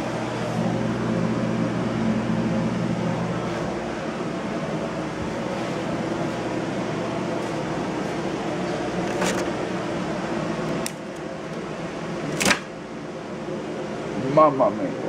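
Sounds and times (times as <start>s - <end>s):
wire stripping machine humming: 0.0s - 14.2s.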